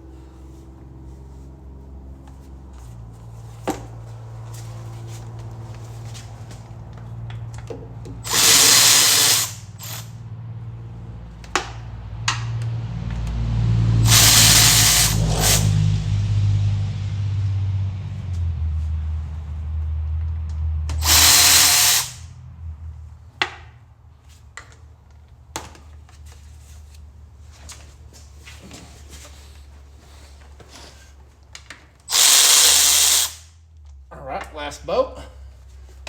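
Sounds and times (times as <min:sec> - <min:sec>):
power ratchet whirring: 0:08.2 - 0:10.2, 0:14.0 - 0:15.8, 0:20.9 - 0:22.3, 0:32.0 - 0:33.5.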